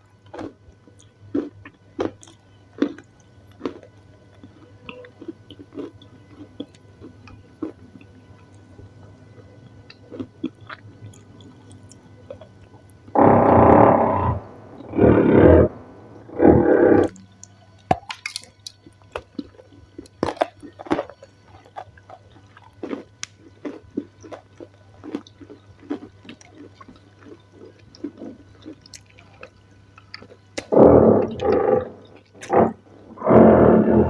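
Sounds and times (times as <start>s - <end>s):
wet chewing with mouth clicks: 0.0s - 8.9s, 9.6s - 13.3s, 16.3s - 33.4s
loud crunching bites: 13.2s - 17.2s.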